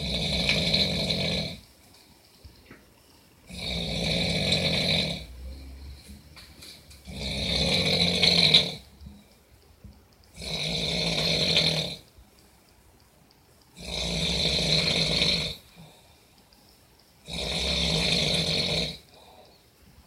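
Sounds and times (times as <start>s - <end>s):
loud snoring: 0.0s - 1.6s, 3.5s - 6.0s, 7.0s - 8.9s, 10.3s - 12.1s, 13.8s - 15.7s, 17.2s - 19.1s.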